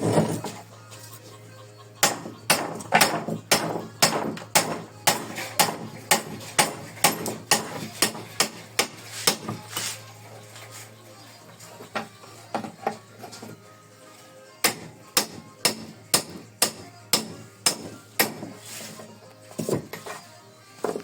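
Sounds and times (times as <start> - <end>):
hammer striking metal: 2.0 - 9.9, 14.6 - 18.6.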